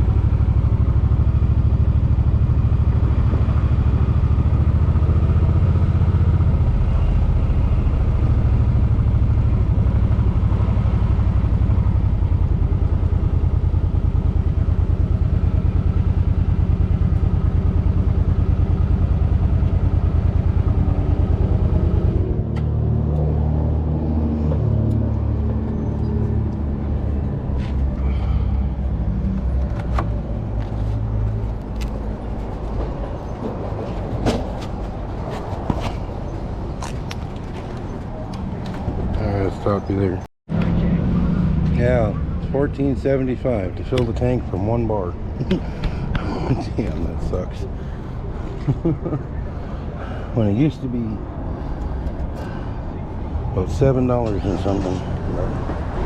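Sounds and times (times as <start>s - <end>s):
motorcycle engine running: 0.0s - 22.8s.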